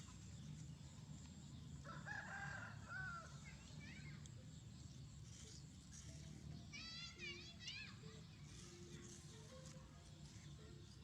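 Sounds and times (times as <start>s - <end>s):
rooster crowing: 1.8s - 3.3s.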